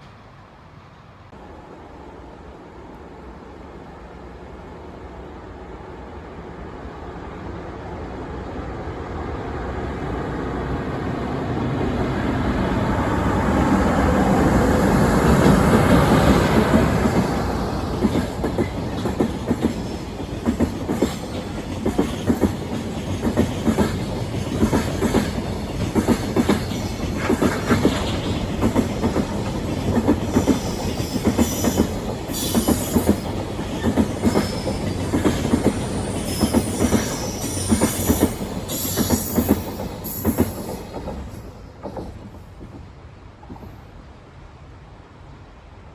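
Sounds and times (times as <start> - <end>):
train passing: 0.0 - 45.9
wheels clicking over rail joints: 15.2 - 43.7.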